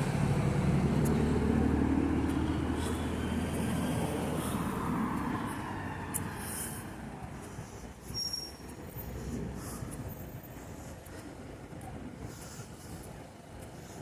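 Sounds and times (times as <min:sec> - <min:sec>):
vehicle engine rumbling past: 0:00.0 - 0:07.3.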